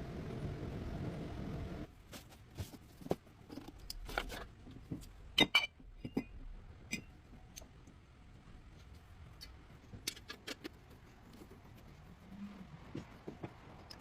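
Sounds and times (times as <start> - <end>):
steady rumbling noise: 0.0 - 2.0.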